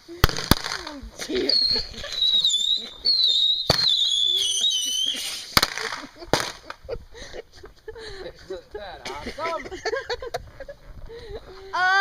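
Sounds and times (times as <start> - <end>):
firework bangs: 0.1 - 7.0
firework whistling: 0.2 - 6.8.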